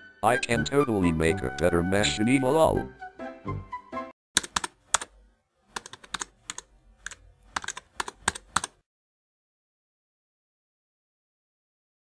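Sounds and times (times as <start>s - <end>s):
computer keyboard typing: 4.4s - 8.8s.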